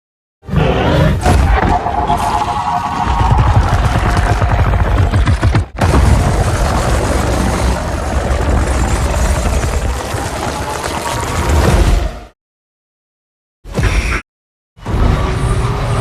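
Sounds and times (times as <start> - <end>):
monster rumble with low pulses: 2.8 - 12.1.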